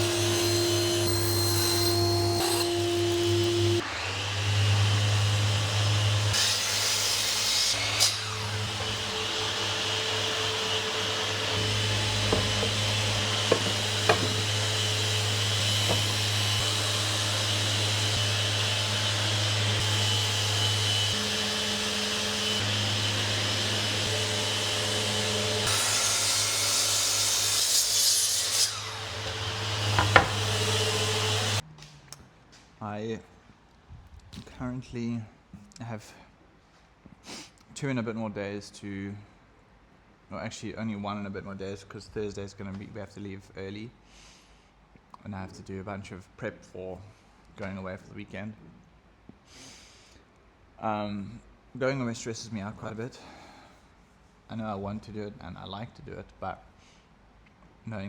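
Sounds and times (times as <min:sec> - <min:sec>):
power tool working wood: 0:00.0 - 0:31.6
sharp knocks: 0:11.6 - 0:16.4, 0:29.9 - 0:30.6.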